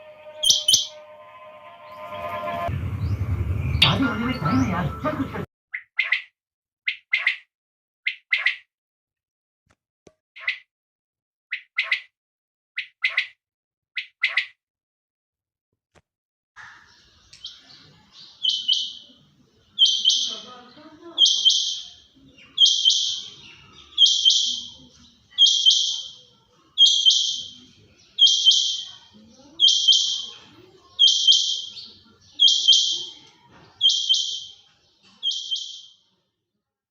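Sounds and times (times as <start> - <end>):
quail calling: 0.0 - 1.0.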